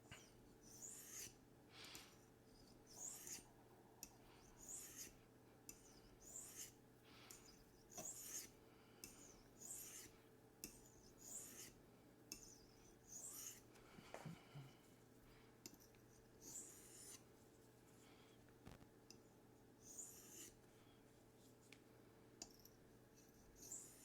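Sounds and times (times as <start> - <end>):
knife scraping on sharpening stone: 0.7 - 1.4, 2.9 - 3.5, 4.6 - 5.1, 5.7 - 6.8, 7.9 - 8.5, 9.1 - 13.6, 16.4 - 17.2, 19.9 - 20.6.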